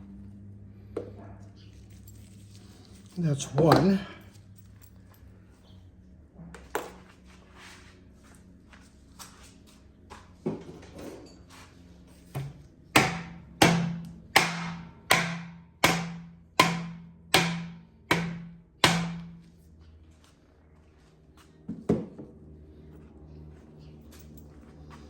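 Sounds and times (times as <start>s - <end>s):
hammer striking axle shaft: 12.3s - 19.5s.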